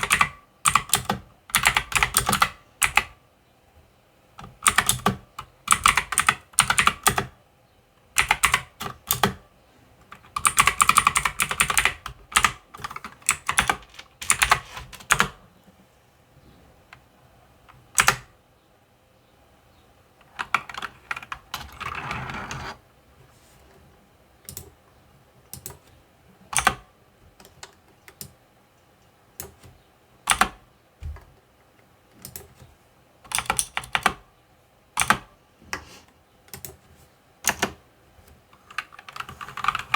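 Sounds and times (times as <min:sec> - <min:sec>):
mechanical keyboard typing clicks: 0:00.0 - 0:03.1, 0:04.4 - 0:07.3, 0:08.2 - 0:09.4, 0:10.2 - 0:15.4, 0:17.7 - 0:18.3, 0:24.5 - 0:24.8, 0:25.5 - 0:25.8, 0:26.5 - 0:28.4, 0:29.4 - 0:30.6, 0:32.2 - 0:32.6, 0:33.3 - 0:34.2, 0:35.0 - 0:35.3, 0:37.4 - 0:37.8, 0:38.6 - 0:39.9.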